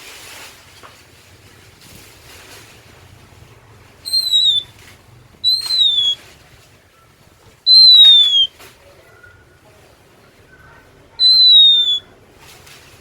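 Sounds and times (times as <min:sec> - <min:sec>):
bird whistles sliding down: 0:04.1 - 0:04.7, 0:05.4 - 0:06.2, 0:07.7 - 0:08.5, 0:11.2 - 0:12.1
faint short bird notes: 0:04.1 - 0:04.7, 0:05.4 - 0:06.2, 0:07.7 - 0:08.5.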